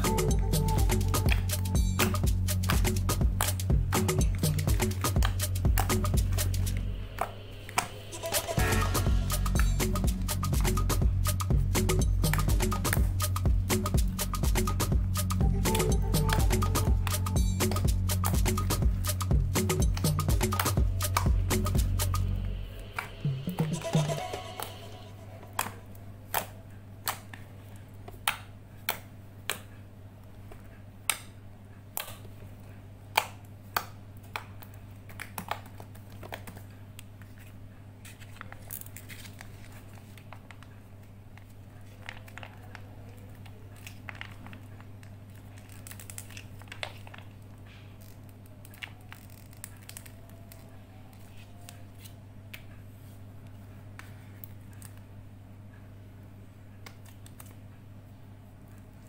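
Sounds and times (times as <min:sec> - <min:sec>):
low hum: 0:00.0 - 0:26.0.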